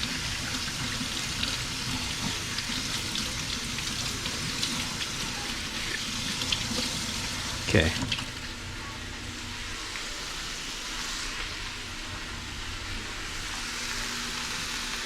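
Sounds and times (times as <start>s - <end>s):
tap water running into sink: 0.0s - 8.6s
steak and onions sizzling: 0.0s - 15.0s.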